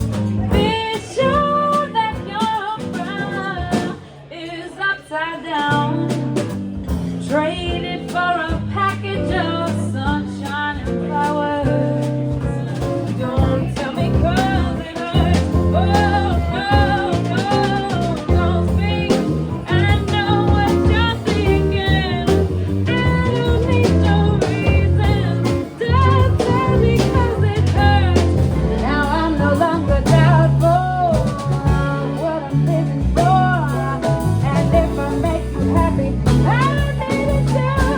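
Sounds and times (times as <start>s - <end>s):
jazz-blues band playing: 0.0s - 37.9s
person singing: 13.1s - 37.9s.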